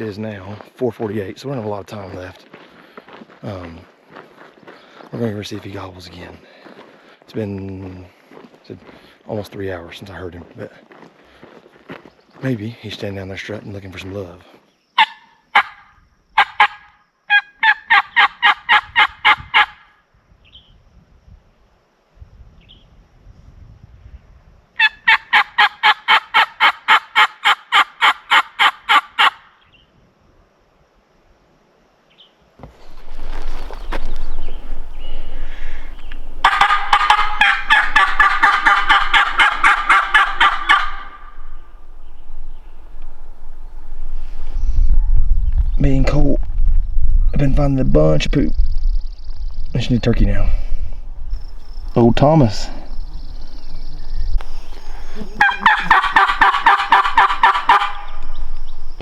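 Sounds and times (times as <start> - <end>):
turkey call yelps: 15.0 - 19.9, 24.8 - 29.5, 34.8 - 43.5, 54.6 - 58.5
small bird chirping: 32.1 - 45.9, 52.8 - 59.0.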